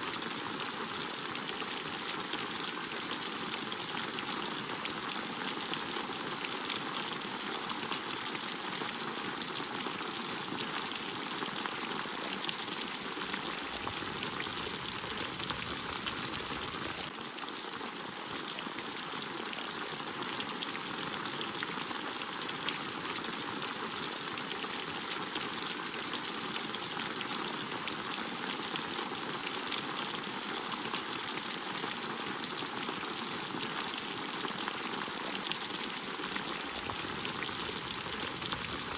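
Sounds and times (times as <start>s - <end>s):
steady rain hiss: 13.0s - 17.1s, 35.8s - 38.9s.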